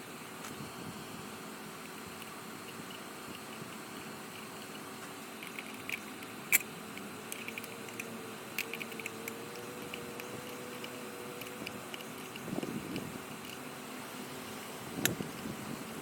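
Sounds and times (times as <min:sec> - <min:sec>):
faint hum: 0:00.0 - 0:16.0.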